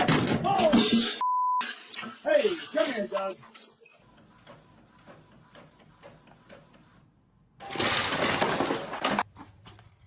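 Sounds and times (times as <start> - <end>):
loud crash and clatter: 7.6 - 9.3.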